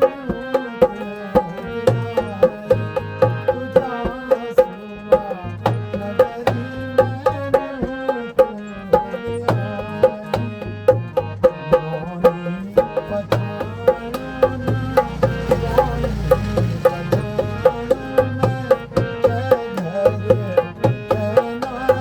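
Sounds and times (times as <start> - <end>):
hand drum beat: 5.1 - 22.0.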